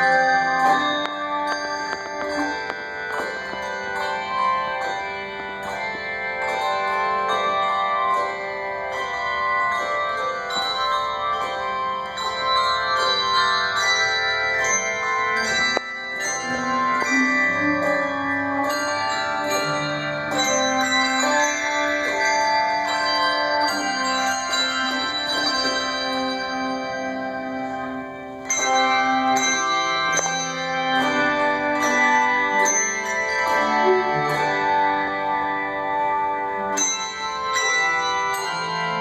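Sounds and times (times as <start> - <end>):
handbell choir ringing a hymn: 0.0 - 39.0.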